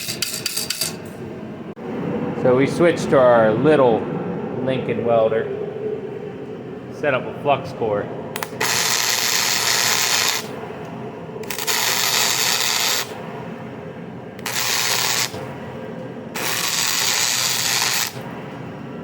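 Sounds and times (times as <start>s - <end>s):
welder arc crackling: 8.4s - 10.6s, 11.4s - 13.2s, 14.4s - 15.6s, 16.4s - 18.4s.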